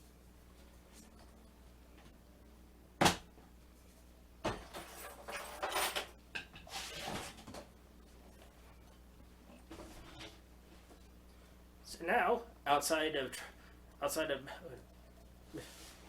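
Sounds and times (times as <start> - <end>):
objects clattering: 4.4 - 7.7.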